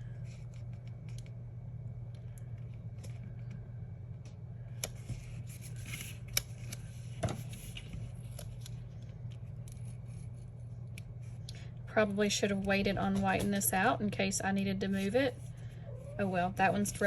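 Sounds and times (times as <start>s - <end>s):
steady low hum: 0.0s - 17.0s
paper rustling: 4.8s - 10.6s.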